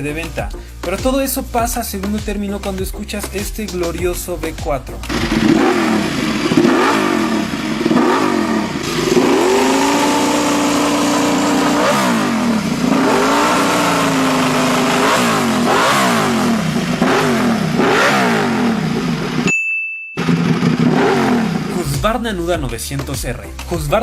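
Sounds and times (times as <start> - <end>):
motorcycle engine revving: 5.0 - 19.5, 20.2 - 22.2.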